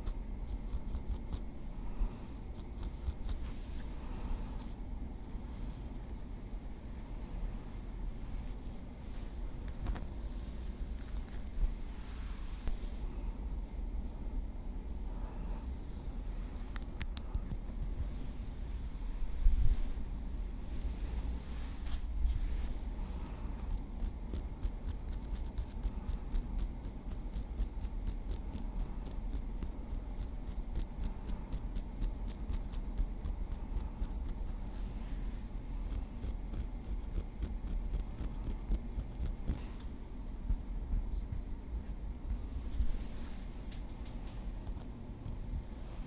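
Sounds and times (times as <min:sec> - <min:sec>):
scratchy rubbing: 0:02.5 - 0:04.0, 0:35.8 - 0:39.7.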